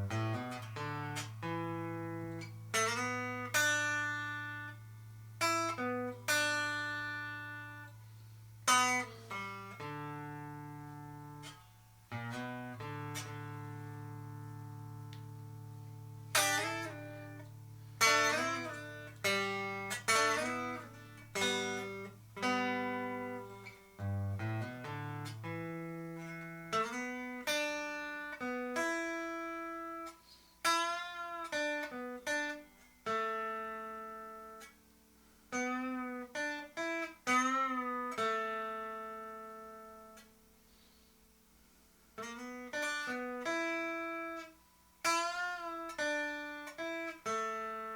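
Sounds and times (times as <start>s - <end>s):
electric guitar notes and chords: 0.0s - 8.0s, 8.6s - 30.1s.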